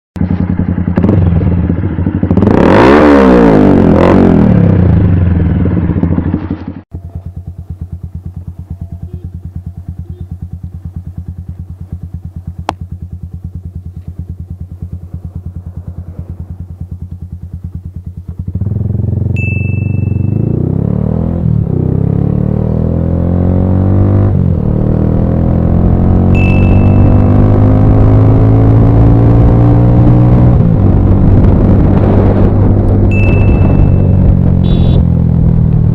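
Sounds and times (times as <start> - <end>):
motorcycle engine revving and idling: 0.2 - 35.9
short high beep: 19.4 - 20.9, 26.2 - 28.2, 33.0 - 35.1.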